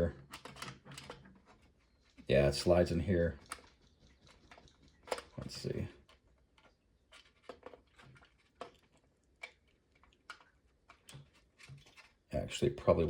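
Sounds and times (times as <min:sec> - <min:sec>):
plastic toy parts clicking: 0:00.2 - 0:01.6.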